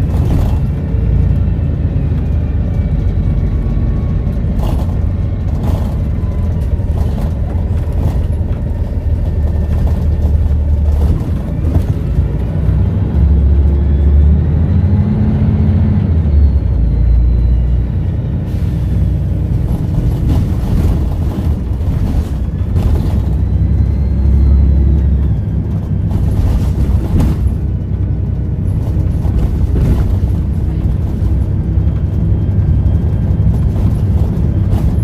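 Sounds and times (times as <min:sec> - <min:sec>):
bus diesel engine rumbling: 0:00.0 - 0:35.0.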